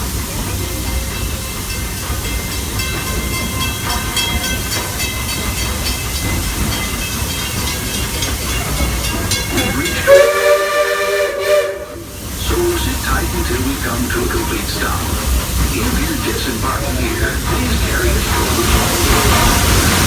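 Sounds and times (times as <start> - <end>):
steam train rolling on track: 0.0 - 20.0
steam locomotive whistle: 9.6 - 12.9.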